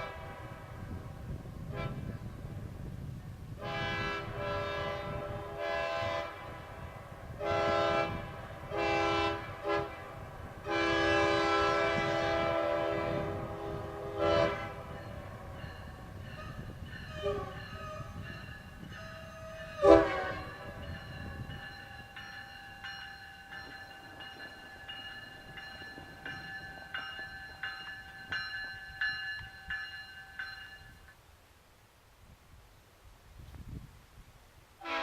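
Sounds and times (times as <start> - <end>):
locomotive air horn chord: 3.6 - 10.0, 10.6 - 15.4, 19.3 - 20.8, 34.8 - 35.0.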